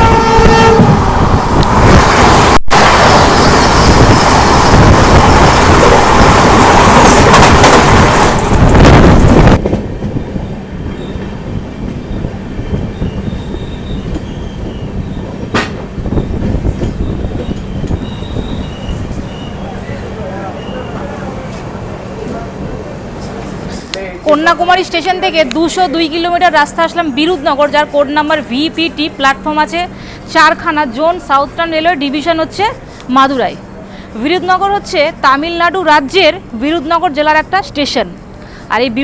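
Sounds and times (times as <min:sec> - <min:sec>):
train wheels rushing on rails: 0:00.0 - 0:39.0.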